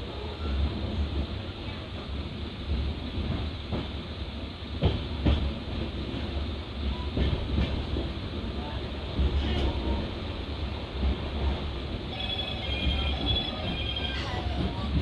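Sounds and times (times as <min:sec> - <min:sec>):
train wheels rumbling on rails: 0:00.0 - 0:15.0.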